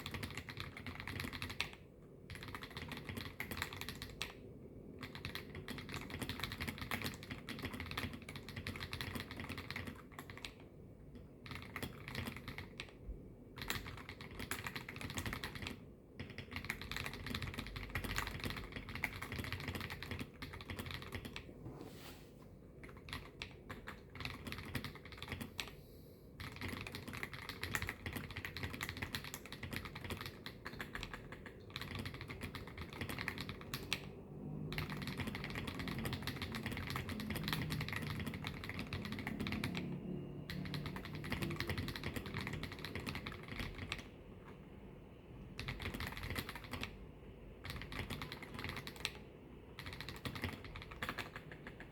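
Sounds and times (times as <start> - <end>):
mechanical keyboard typing: 0.0 - 21.5, 22.8 - 25.7, 26.4 - 44.6, 45.4 - 51.9.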